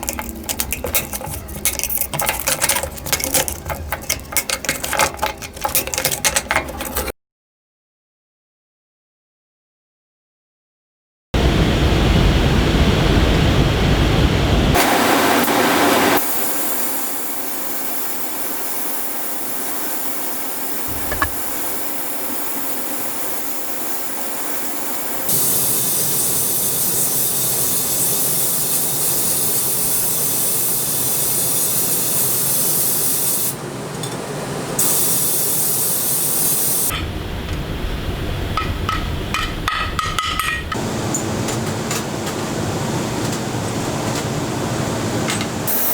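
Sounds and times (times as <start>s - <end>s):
clicks: 20.9s - 21.7s.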